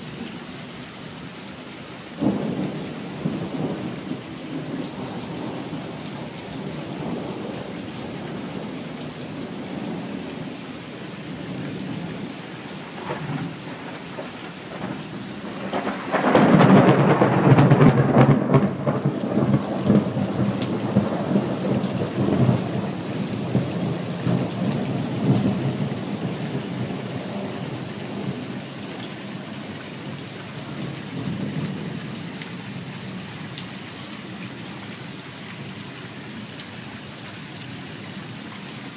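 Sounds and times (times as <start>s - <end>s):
steady rain: 0.0s - 38.9s
loud thunderclap: 2.2s - 5.7s, 13.0s - 28.4s
low rumbling thunder: 2.2s - 10.4s, 12.9s - 28.7s.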